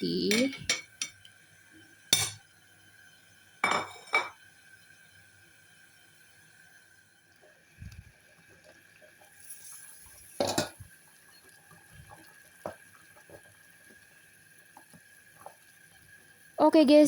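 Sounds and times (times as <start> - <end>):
pot and utensils clinking: 0.1 - 1.2, 2.1 - 2.4, 3.6 - 4.4, 10.4 - 10.8.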